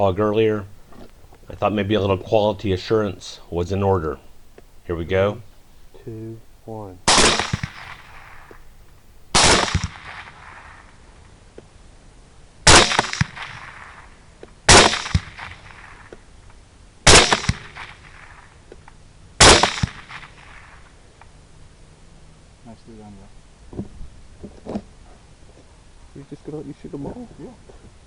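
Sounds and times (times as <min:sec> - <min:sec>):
rifle shots echoing: 0:00.0 - 0:10.9, 0:12.7 - 0:14.1, 0:14.7 - 0:16.1, 0:17.1 - 0:18.4, 0:19.4 - 0:20.9.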